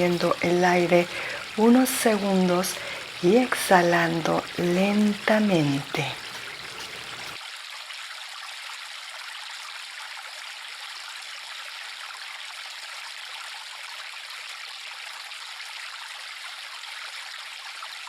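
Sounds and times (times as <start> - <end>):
river flowing: 0.0 - 7.4.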